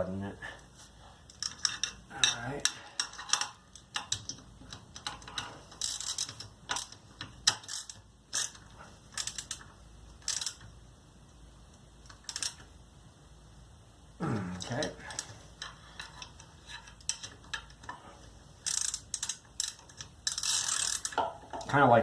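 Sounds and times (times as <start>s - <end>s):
ratchet wrench clicking: 1.3s - 10.7s, 12.1s - 12.6s, 18.6s - 21.2s.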